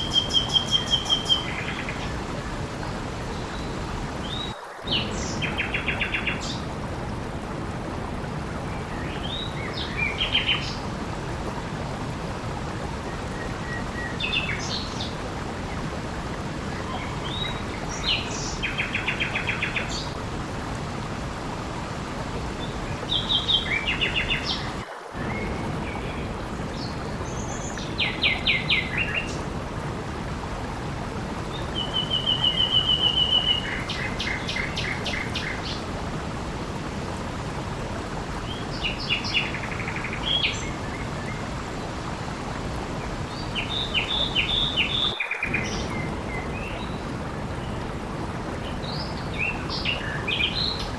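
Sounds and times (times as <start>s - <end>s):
songbird singing: 0.0s - 2.2s, 16.6s - 20.2s, 22.6s - 29.4s, 31.5s - 35.9s.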